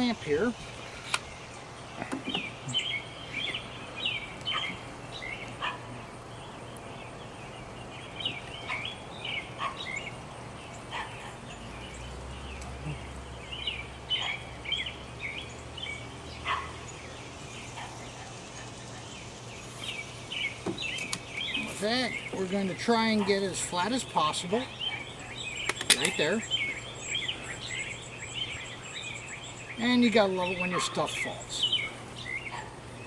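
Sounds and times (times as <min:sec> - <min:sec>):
small birds chirping: 0:00.0 - 0:33.0
light knocks: 0:02.0 - 0:02.5.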